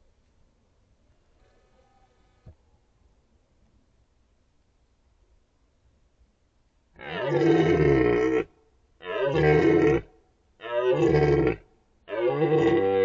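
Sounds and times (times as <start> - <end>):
deer stag roaring: 7.0 - 13.0.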